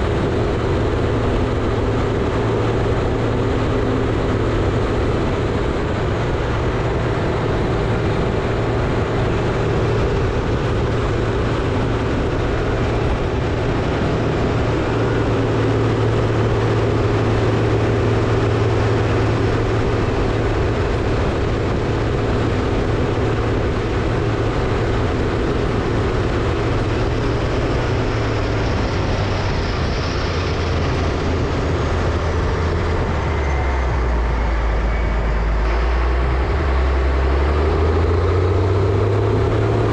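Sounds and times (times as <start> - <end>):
heavy diesel engines under load: 0.0 - 39.9.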